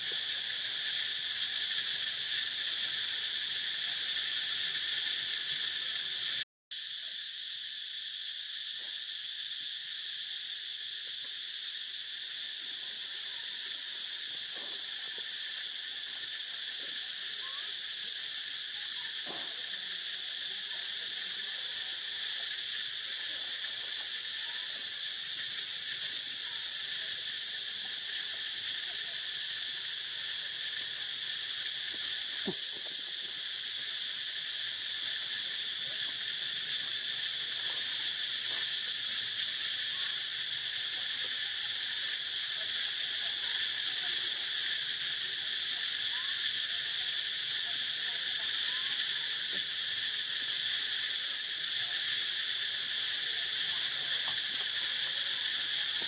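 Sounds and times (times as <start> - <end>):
insects chorus drone: 0.0 - 56.0.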